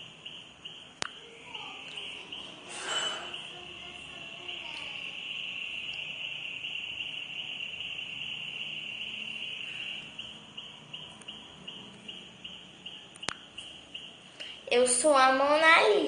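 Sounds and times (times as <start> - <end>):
cricket chirping: 0.0 - 15.4.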